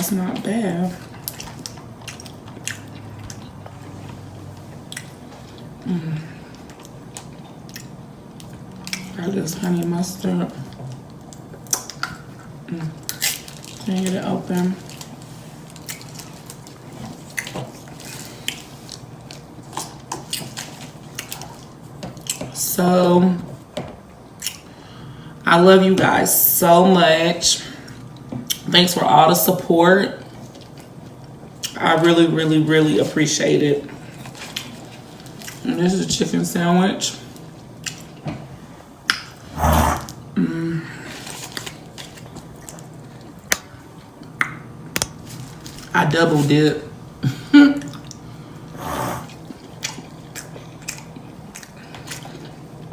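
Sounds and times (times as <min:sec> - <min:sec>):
person chewing a sandwich: 0:01.0 - 0:09.1, 0:14.9 - 0:22.4, 0:47.8 - 0:52.9.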